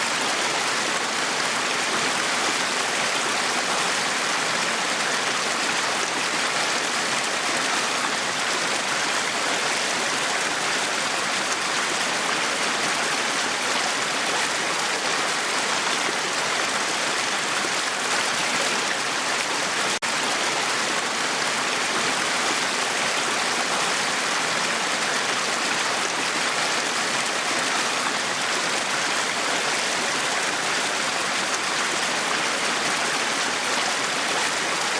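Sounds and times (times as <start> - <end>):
brook babbling over stones: 0.0 - 34.9.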